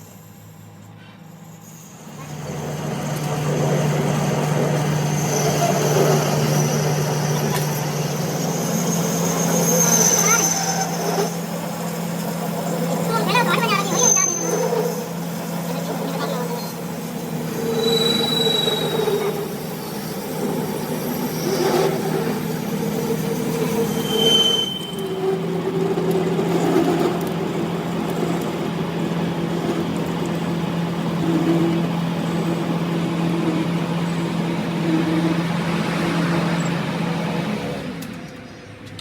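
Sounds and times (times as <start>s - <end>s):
high-pitched metallic squeals: 0.9s - 11.8s, 12.8s - 27.0s
machine motor humming: 2.2s - 39.0s.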